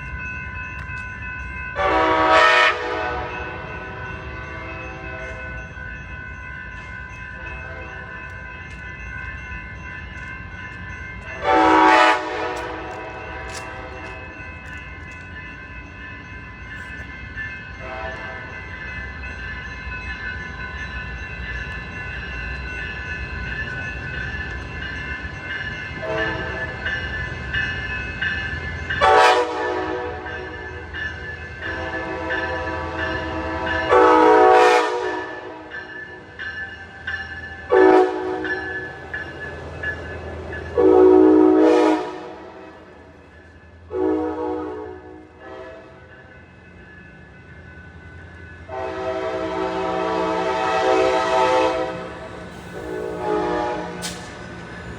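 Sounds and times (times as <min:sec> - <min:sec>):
train air horn blasts: 0:01.8 - 0:03.3, 0:11.4 - 0:14.1, 0:17.8 - 0:18.4, 0:29.0 - 0:30.3, 0:31.7 - 0:35.7, 0:37.7 - 0:38.5, 0:40.8 - 0:42.8, 0:43.9 - 0:46.0, 0:48.7 - 0:52.1, 0:52.7 - 0:54.2.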